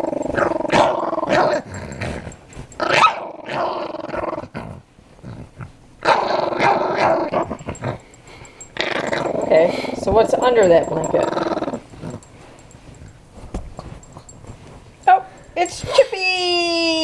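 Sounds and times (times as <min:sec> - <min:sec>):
dog growling: 0:00.0 - 0:12.6.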